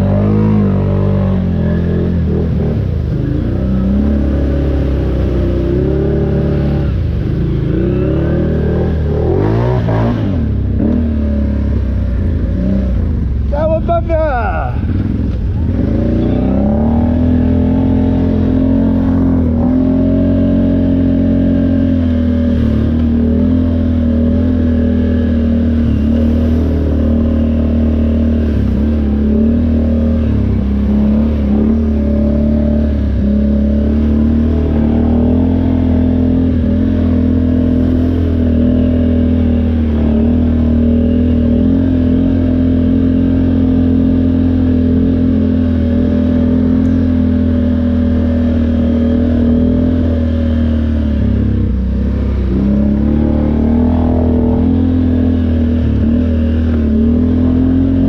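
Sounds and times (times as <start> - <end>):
atv engine running: 0.0 - 58.0.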